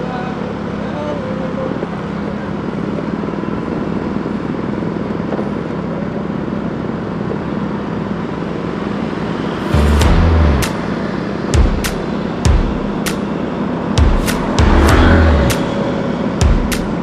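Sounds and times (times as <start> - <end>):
vehicle engine and road noise: 0.0 - 17.0
loud low rumble: 9.1 - 17.0.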